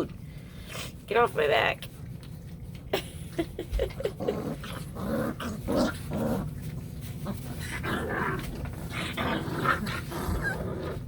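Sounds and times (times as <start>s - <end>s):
puppies growling: 3.4s - 11.0s.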